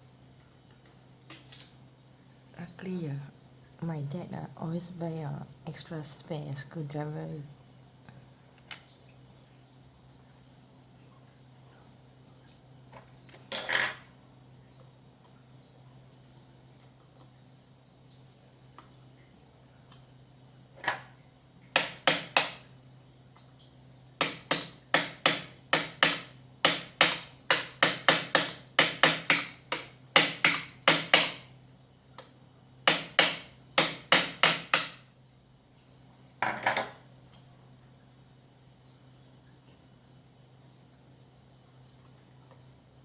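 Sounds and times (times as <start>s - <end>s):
tool hammering: 21.7s - 22.7s, 24.2s - 31.5s, 32.8s - 35.0s.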